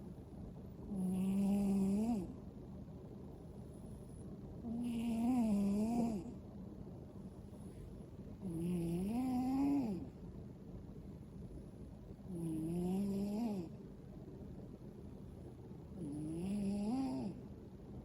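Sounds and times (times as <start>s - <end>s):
cat snoring loudly: 0.9s - 2.4s, 4.6s - 6.3s, 8.4s - 10.1s, 12.3s - 13.8s, 15.9s - 17.4s.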